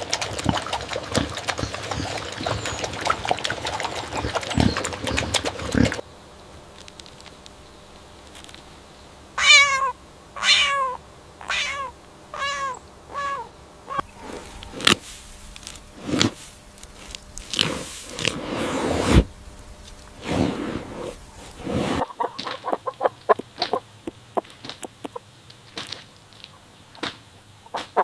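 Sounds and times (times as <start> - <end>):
cat meowing: 9.4 - 14.1.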